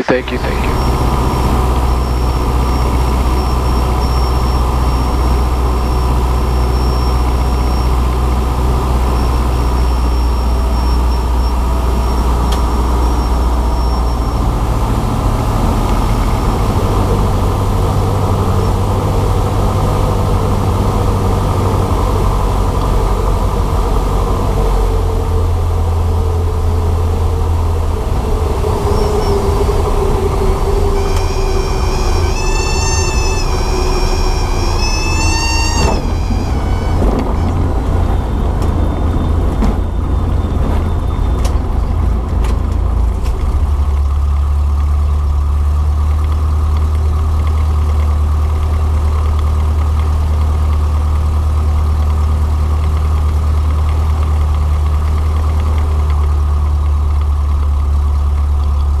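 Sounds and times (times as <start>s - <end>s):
airplane engine and propeller droning: 0.0s - 59.0s
high wavering tone: 28.8s - 40.0s.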